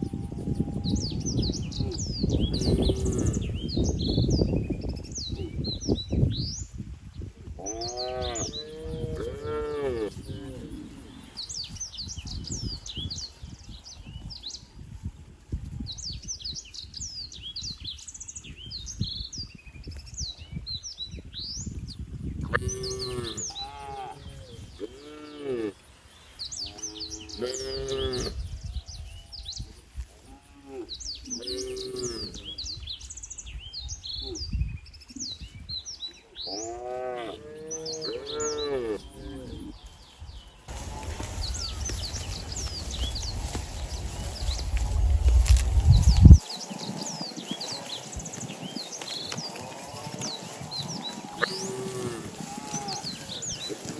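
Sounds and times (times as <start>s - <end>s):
small birds chirping: 0.6s - 15.1s, 30.9s - 53.9s.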